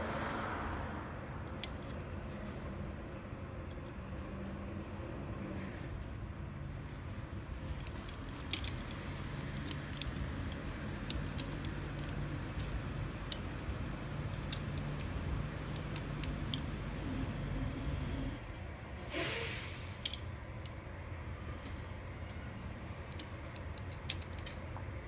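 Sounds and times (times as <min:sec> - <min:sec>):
small metal parts clicking: 0:00.0 - 0:04.6, 0:07.6 - 0:17.4, 0:19.7 - 0:20.9, 0:23.0 - 0:24.7
steady low hum: 0:00.0 - 0:19.1.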